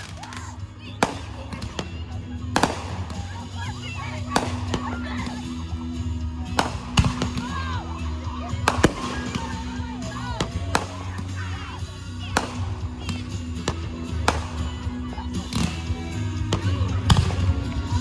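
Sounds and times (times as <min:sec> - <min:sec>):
fireworks bangs: 0:00.0 - 0:18.0
music from a loudspeaker: 0:00.0 - 0:18.0.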